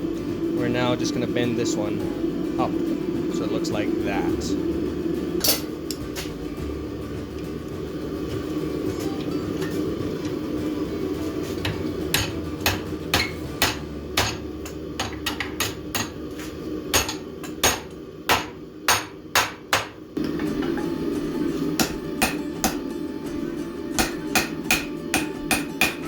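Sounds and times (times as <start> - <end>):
steady low rumble: 0.0 - 8.9
hammer striking steel bar: 11.6 - 16.2, 16.9 - 20.8, 21.8 - 22.8, 24.0 - 26.0.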